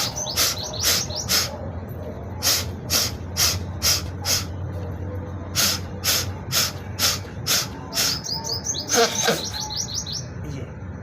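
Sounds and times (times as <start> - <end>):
sharp nasal exhalations: 0.4 - 1.6, 2.4 - 4.6, 5.6 - 8.2.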